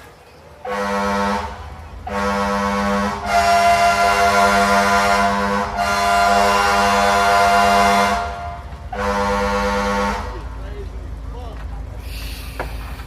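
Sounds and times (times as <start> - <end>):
fire engine air horn blasts: 0.6 - 10.4.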